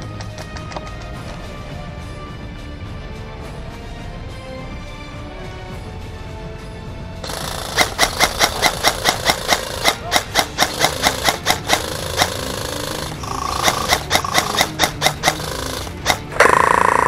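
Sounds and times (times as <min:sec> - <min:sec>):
airsoft gun rapid shots: 0:07.2 - 0:17.0.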